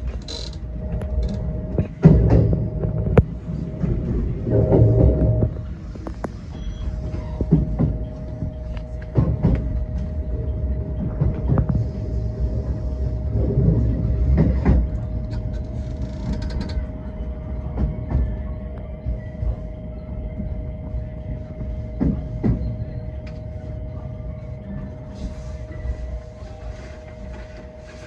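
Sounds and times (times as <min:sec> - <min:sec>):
constant hum: 0:00.0 - 0:28.0
train rumble: 0:00.0 - 0:28.0.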